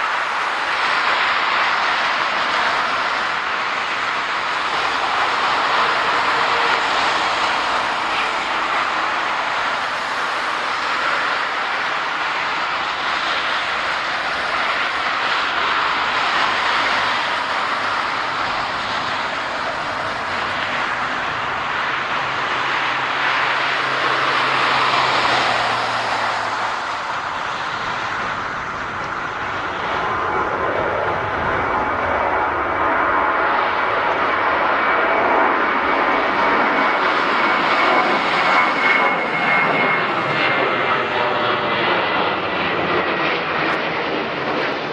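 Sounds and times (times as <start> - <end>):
jet engines rushing: 0.0 - 44.9.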